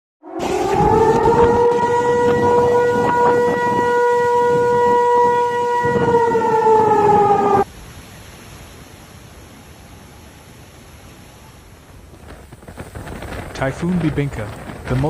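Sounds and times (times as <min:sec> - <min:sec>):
siren steady tone: 0:00.2 - 0:07.7.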